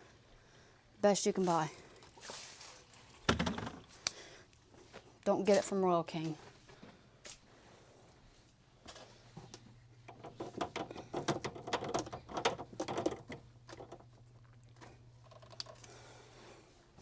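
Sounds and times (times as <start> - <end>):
plastic clicking and rattling: 10.0 - 14.1.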